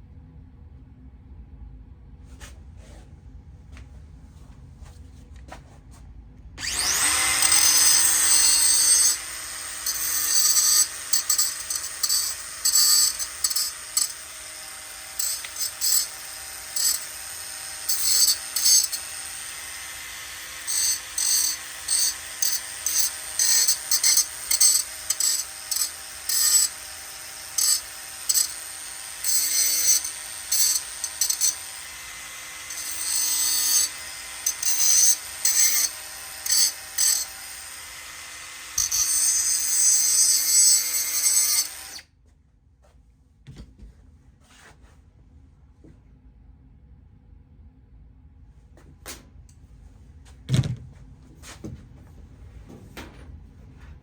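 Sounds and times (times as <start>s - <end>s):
abrasive power tool on steel: 6.6s - 42.1s.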